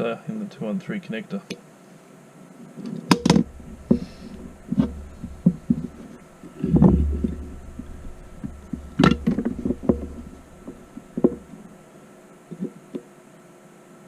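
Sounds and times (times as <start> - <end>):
low hum: 3.1 - 11.9.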